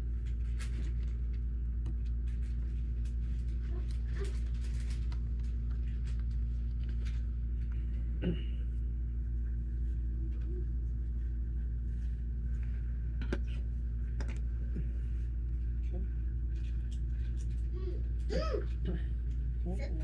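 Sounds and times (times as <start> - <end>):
low room hum: 0.0 - 20.0.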